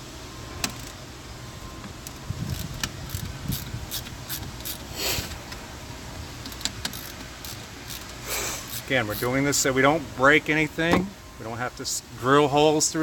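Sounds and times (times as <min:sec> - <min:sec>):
screwdriver clicking and scraping: 0:02.4 - 0:04.9, 0:06.4 - 0:09.2.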